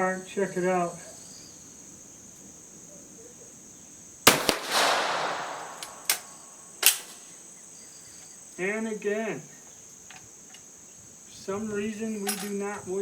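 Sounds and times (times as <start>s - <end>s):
insects chirping: 0.0s - 13.0s
rifle action clicks: 4.3s - 6.4s
rifle shot echoing: 4.3s - 6.5s.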